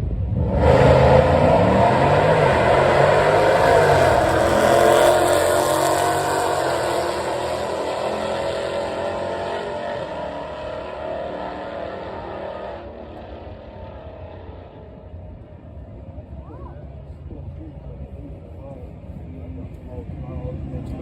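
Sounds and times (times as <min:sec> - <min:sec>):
drag car engine at full throttle: 0:00.0 - 0:21.0.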